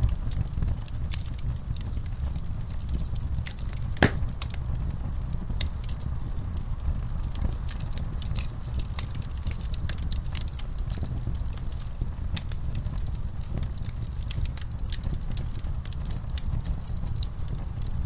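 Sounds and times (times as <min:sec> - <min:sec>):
low rumble of flames: 0:00.0 - 0:18.0
wood fire crackling and popping: 0:00.0 - 0:18.0.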